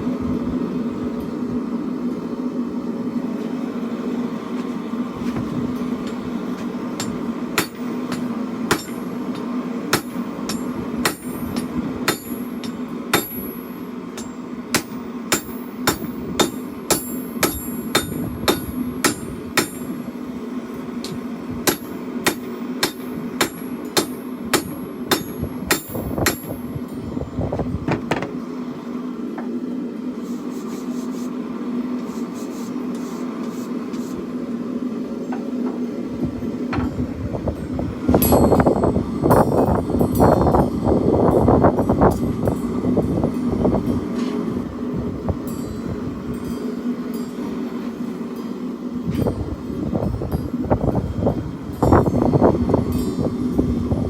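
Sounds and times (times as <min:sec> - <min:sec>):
forge burner roaring: 0:00.0 - 0:54.0
hammer striking steel on anvil: 0:07.0 - 0:20.0, 0:21.0 - 0:27.0, 0:38.2 - 0:38.7.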